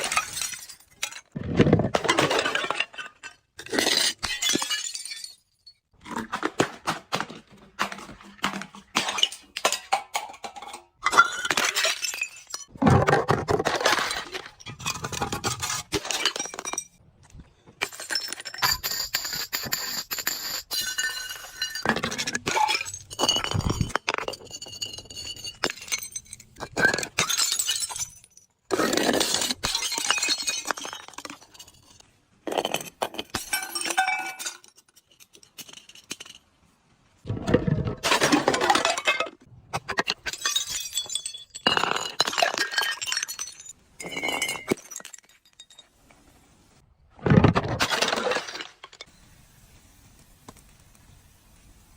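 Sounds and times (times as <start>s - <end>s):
glass bottles breaking: 0.0s - 17.0s, 17.8s - 36.4s, 37.3s - 46.0s, 47.3s - 49.1s
glass shards clinking: 32.6s - 36.5s.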